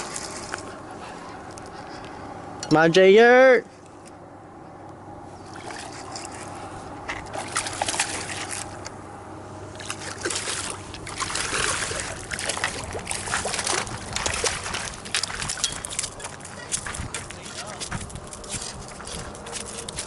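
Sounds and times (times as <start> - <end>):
water splashing and sloshing: 0.0 - 2.0, 5.3 - 20.0
fish thrashing at surface: 7.3 - 8.8, 9.7 - 20.0.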